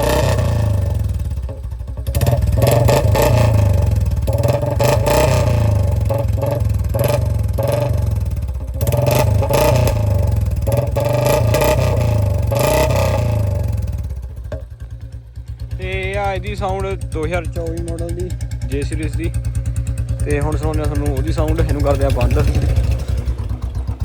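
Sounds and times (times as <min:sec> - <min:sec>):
motorcycle engine running: 0:00.0 - 0:24.0.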